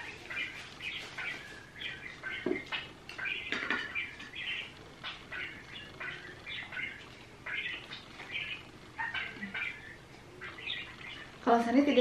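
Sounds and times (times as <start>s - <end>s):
high chirping calls: 0.0s - 12.0s
dishes and cutlery clicking: 3.5s - 4.0s.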